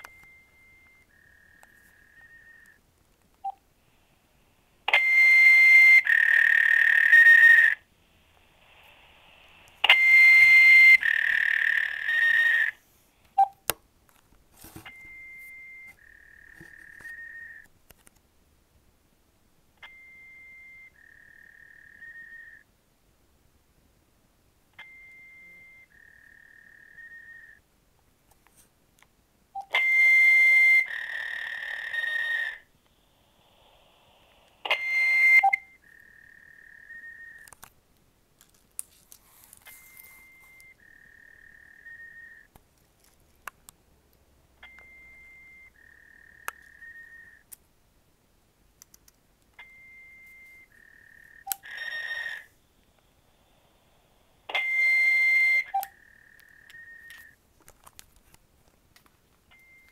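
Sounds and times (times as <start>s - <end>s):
two-tone electronic beeps: 0.0s - 2.8s, 4.9s - 7.8s, 9.8s - 12.7s, 14.9s - 17.6s, 19.8s - 22.6s, 24.8s - 27.6s, 29.6s - 32.6s, 34.6s - 37.4s, 39.7s - 42.5s, 44.6s - 47.4s, 49.6s - 52.5s, 54.5s - 57.4s, 59.5s - 59.9s.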